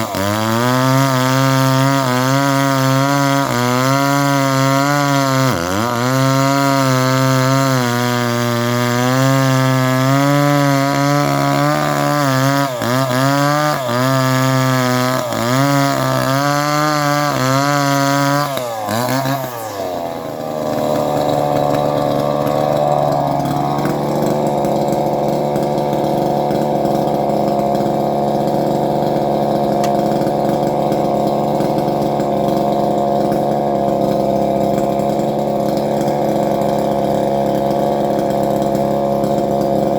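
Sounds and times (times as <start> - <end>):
chainsaw engine running: 0.0 - 39.9.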